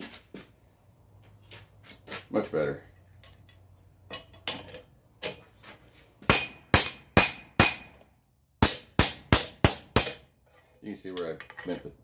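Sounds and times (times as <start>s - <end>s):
hammer striking steel on anvil: 6.3s - 8.0s, 8.6s - 10.3s.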